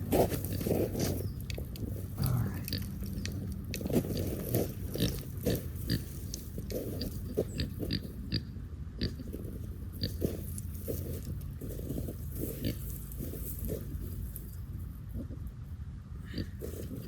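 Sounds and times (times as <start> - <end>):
pig grunting: 2.1 - 3.4, 16.2 - 17.0.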